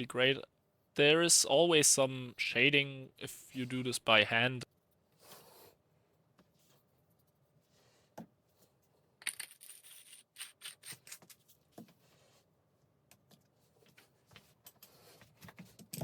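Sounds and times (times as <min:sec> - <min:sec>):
small steel parts clinking: 0:09.2 - 0:11.5.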